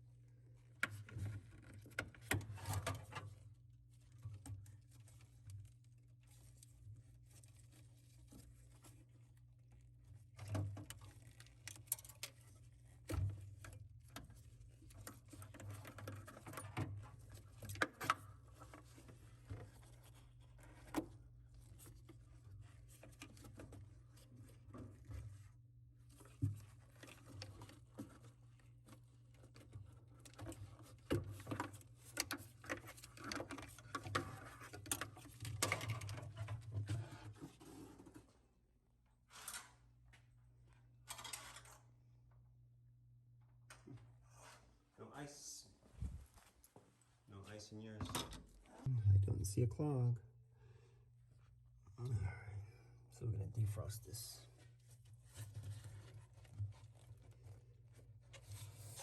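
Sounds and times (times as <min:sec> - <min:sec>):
steady low hum: 0:48.9 - 0:53.2.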